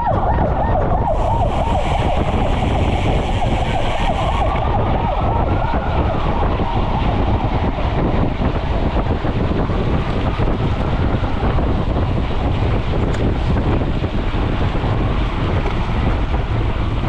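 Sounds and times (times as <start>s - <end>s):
faint whine: 0.0s - 9.1s
wind rushing over microphone: 0.0s - 17.0s.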